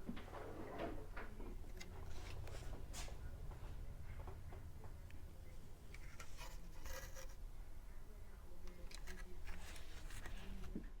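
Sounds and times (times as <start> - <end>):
clicks and scrapes on circuit board: 5.9 - 7.4.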